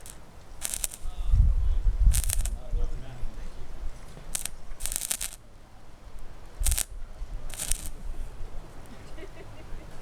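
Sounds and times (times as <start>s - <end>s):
welding arc crackling and hissing: 0.0s - 1.3s, 2.0s - 2.6s, 4.2s - 5.4s, 6.5s - 8.0s.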